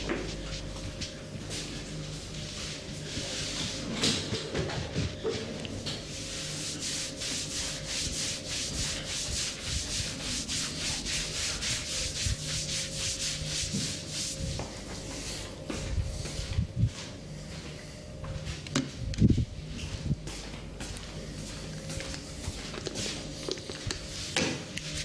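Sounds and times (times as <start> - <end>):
hands rubbing rhythmic rasp: 6.1 - 15.2.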